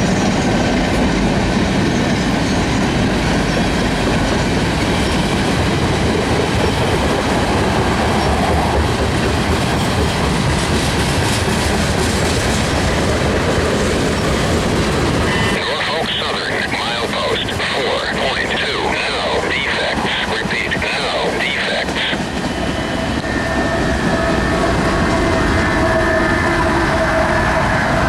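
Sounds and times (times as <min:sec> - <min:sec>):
freight train cars rolling past: 0:00.0 - 0:15.6, 0:22.1 - 0:28.0.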